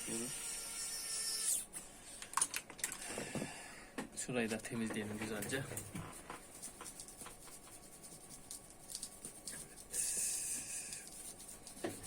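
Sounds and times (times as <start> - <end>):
scratching and rubbing on laptop: 5.3 - 12.0.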